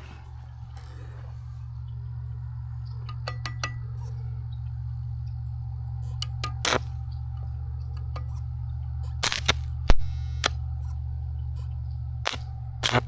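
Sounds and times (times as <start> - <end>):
steady low hum: 0.0 - 13.0
metal scrape: 12.3 - 13.0.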